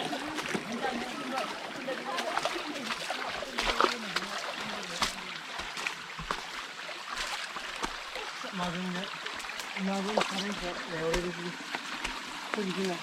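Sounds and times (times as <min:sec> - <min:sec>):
people's voices: 0:00.0 - 0:05.7
sharp water splashes: 0:00.0 - 0:13.0.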